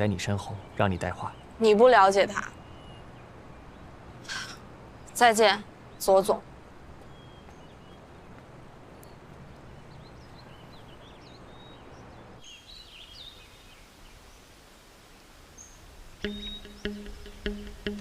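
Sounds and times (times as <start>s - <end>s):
birds chirping faintly: 0.0s - 18.0s
music with repeated short notes: 16.2s - 18.0s.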